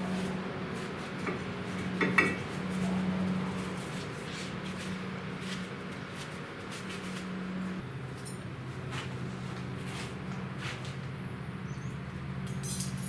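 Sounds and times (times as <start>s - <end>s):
low machine hum: 0.0s - 13.0s
small parts clicking and scraping: 12.4s - 13.0s.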